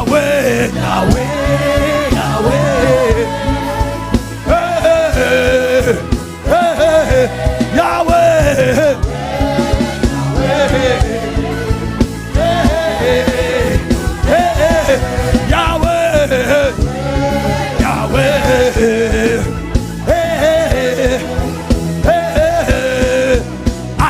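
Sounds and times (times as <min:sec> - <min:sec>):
person singing: 0:00.0 - 0:11.8, 0:12.4 - 0:23.5
band with drums: 0:00.0 - 0:24.0.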